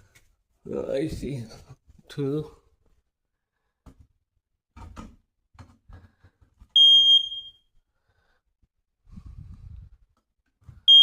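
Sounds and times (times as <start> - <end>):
smoke alarm beep: 6.8 - 7.7.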